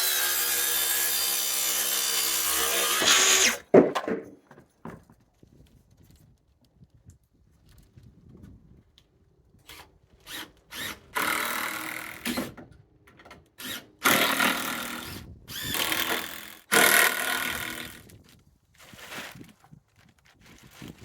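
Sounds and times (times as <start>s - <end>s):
power drill driving into wood: 0.0s - 4.2s, 9.7s - 12.7s, 13.6s - 18.1s.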